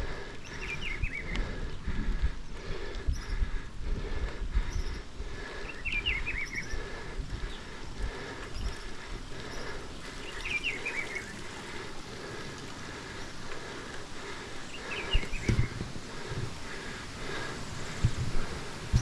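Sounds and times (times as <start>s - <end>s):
small birds chirping: 0.0s - 19.0s
dull thumps: 15.4s - 16.4s.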